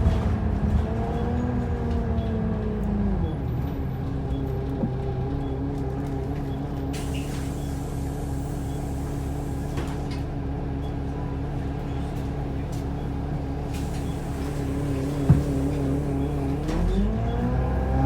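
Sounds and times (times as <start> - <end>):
bus engine idling: 0.0 - 18.0.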